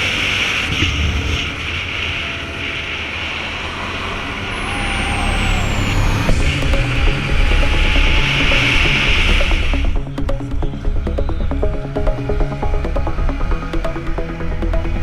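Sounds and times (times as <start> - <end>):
road and wind noise: 0.0 - 15.0
vehicle driving low rumble: 3.2 - 15.0.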